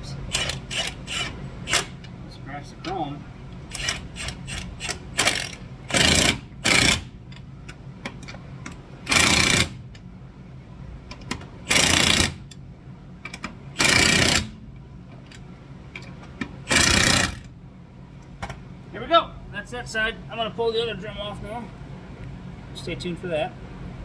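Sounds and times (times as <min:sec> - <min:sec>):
impact wrench hammering: 0:00.3 - 0:02.0, 0:03.7 - 0:07.1, 0:09.1 - 0:09.8, 0:11.7 - 0:12.5, 0:13.8 - 0:14.5, 0:16.7 - 0:17.5
tools clicking: 0:00.3 - 0:02.0.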